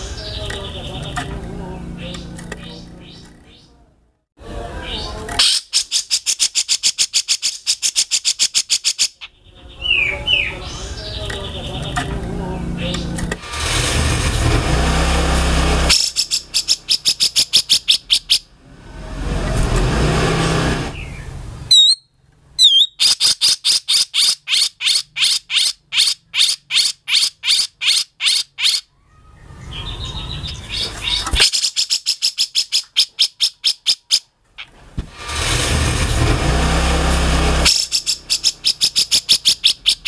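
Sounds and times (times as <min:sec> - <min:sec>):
bird harsh rasping call: 0:04.6 - 0:12.0, 0:14.8 - 0:18.5, 0:20.3 - 0:40.0
bird calling rapid sharp notes: 0:04.8 - 0:10.5, 0:15.8 - 0:18.5, 0:20.9 - 0:28.9, 0:29.8 - 0:34.7, 0:37.6 - 0:40.0.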